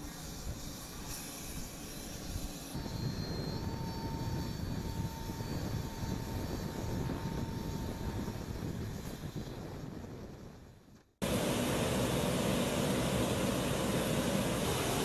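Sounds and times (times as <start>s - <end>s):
faint high whine: 0.0s - 9.5s, 11.2s - 15.0s
aircraft engine rumble: 11.2s - 15.0s.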